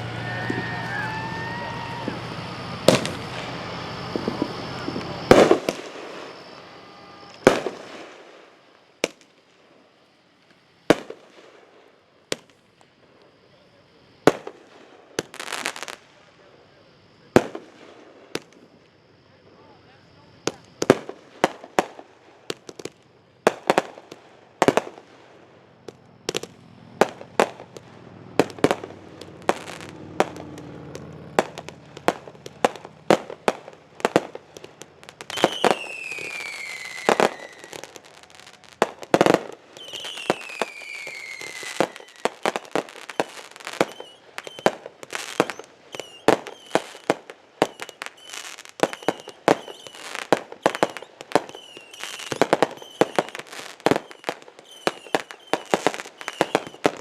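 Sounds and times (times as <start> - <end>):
short whistle chirps: 0.0 - 5.4, 6.2 - 7.5, 35.2 - 38.7, 39.8 - 53.4, 54.0 - 56.9
fireworks bangs and pops: 0.0 - 9.8, 10.4 - 13.4, 14.2 - 19.0, 20.2 - 57.0
falling firework whistles: 0.0 - 57.0.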